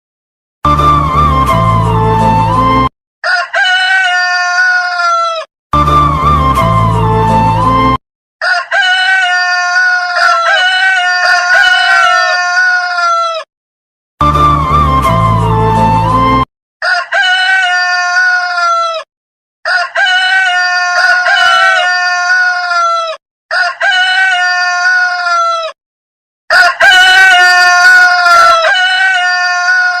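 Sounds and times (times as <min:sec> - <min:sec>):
rooster crowing: 0:03.2 - 0:05.5, 0:08.4 - 0:13.5, 0:16.8 - 0:25.8, 0:26.5 - 0:30.0.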